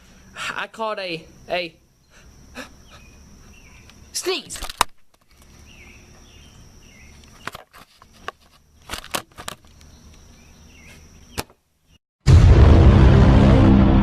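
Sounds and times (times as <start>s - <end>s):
faint chirps: 0.0s - 4.4s, 5.3s - 7.5s.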